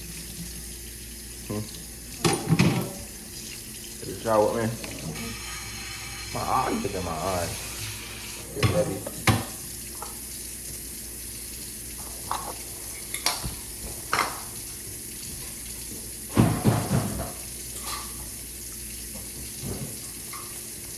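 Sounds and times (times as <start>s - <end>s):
dishes and utensils clinking: 2.2s - 3.0s, 16.4s - 18.2s
steady hiss: 5.2s - 8.7s.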